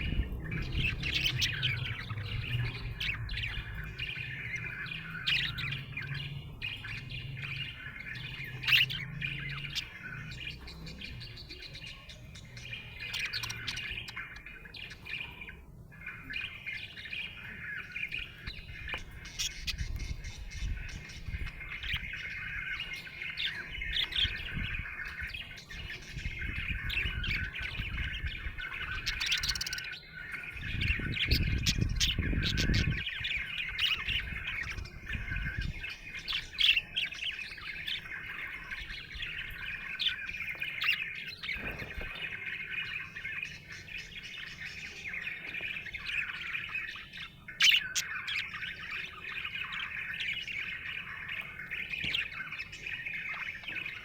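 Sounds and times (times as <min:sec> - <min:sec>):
low rumble: 0:00.0 - 0:07.9
budgerigar warbling and chirping: 0:00.0 - 0:54.0.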